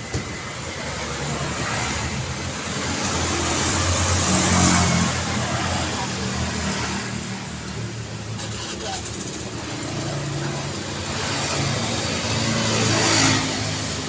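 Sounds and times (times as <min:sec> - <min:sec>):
road traffic: 0:00.0 - 0:14.0
vehicle passing close by: 0:10.0 - 0:14.0.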